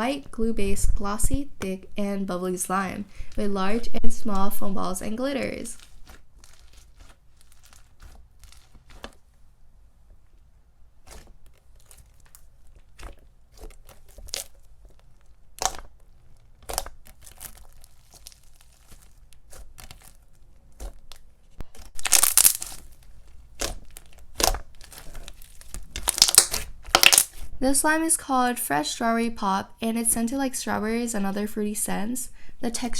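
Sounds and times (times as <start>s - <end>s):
foam ball slime crackling and popping: 5.2s - 9.5s, 10.1s - 27.6s.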